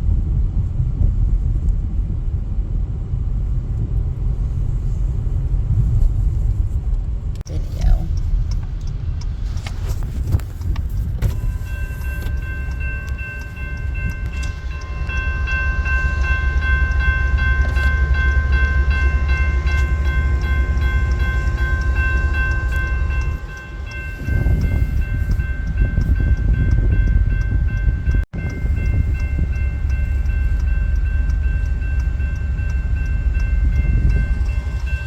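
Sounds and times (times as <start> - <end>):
train rumble: 0.0 - 35.0
high whine: 11.0 - 35.0.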